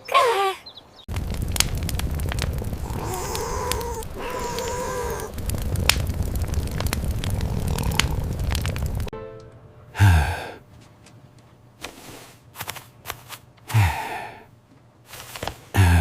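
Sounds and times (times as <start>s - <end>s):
person sighing: 2.8s - 5.4s, 9.9s - 10.6s, 13.7s - 14.5s, 15.8s - 16.0s.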